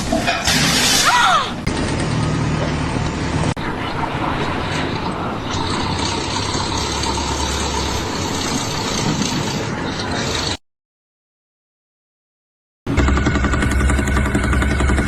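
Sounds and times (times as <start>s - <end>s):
machine engine humming: 1.6s - 10.6s, 12.9s - 15.0s.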